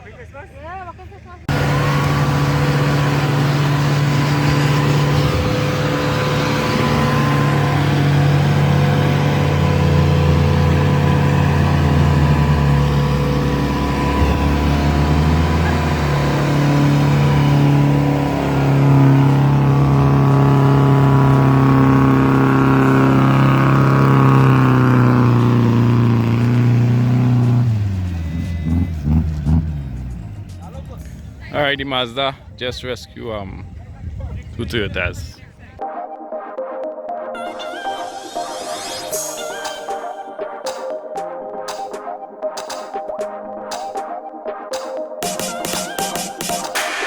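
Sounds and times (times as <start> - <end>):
car engine revving under load: 1.4 - 31.8.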